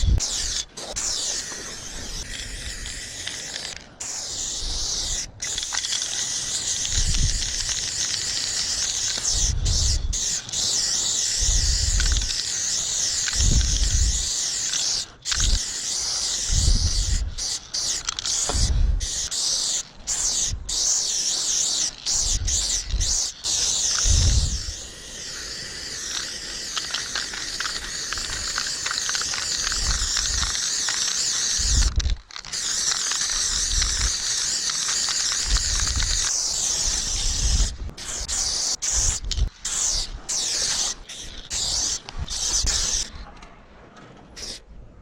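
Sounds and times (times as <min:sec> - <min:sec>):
spray paint can hissing: 0:00.0 - 0:43.2, 0:44.4 - 0:44.6.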